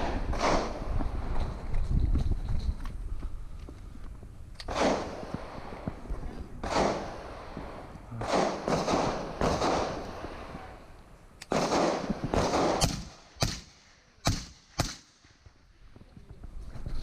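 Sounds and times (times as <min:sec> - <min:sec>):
gunshots: 0:00.0 - 0:00.9, 0:04.7 - 0:06.0, 0:06.6 - 0:10.7, 0:11.5 - 0:15.4.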